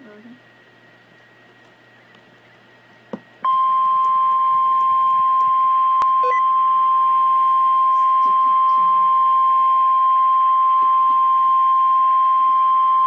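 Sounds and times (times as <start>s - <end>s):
faint hum: 0.0s - 13.0s
steady high alarm beep: 3.4s - 13.0s.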